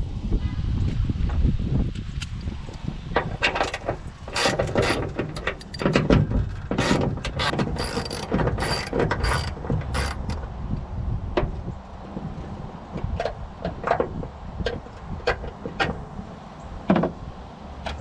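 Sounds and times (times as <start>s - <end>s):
ratchet wrench clicking: 6.8s - 10.4s.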